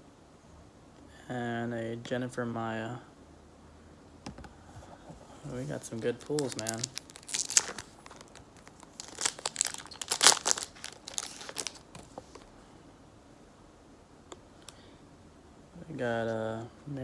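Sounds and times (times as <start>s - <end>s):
foil wrapper crinkling: 5.4s - 12.5s.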